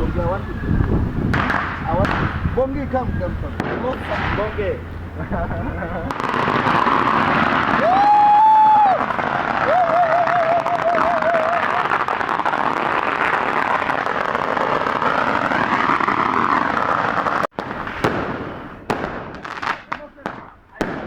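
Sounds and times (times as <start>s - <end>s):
firework bangs: 0.0s - 21.0s
firework crackling: 0.0s - 21.0s
firework whistle: 6.1s - 19.9s.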